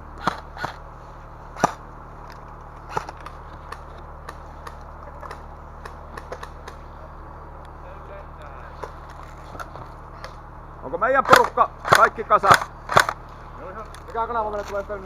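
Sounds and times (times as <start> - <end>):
steady low hum: 0.0 - 15.0
airsoft gun shots: 11.2 - 13.2.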